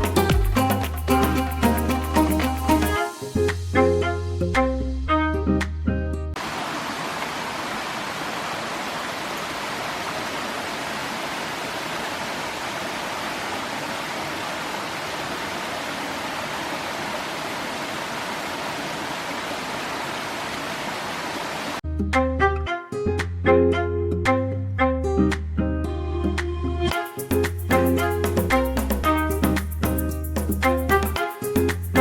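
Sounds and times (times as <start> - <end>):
background music: 0.0 - 6.4, 21.8 - 32.0.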